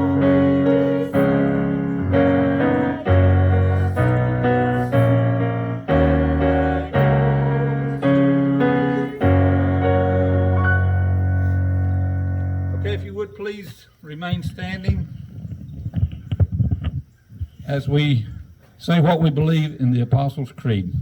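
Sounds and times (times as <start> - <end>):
piano playing slow hymn chords: 0.0 - 13.4.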